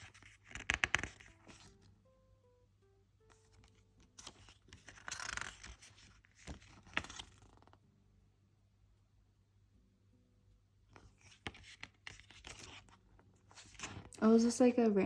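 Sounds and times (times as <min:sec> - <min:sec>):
paper packaging rustling: 0:03.3 - 0:07.8, 0:11.0 - 0:14.2.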